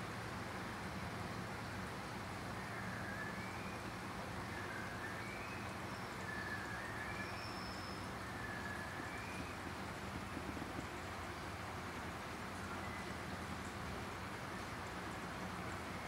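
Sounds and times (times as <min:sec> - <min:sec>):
faint wavering whistles: 0:02.6 - 0:09.6.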